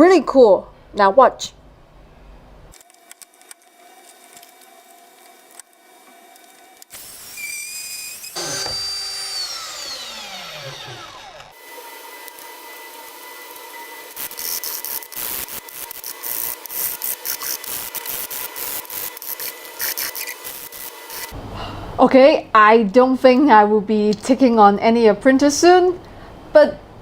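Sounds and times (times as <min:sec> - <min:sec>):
electric drill motor whining: 0:03.5 - 0:21.4.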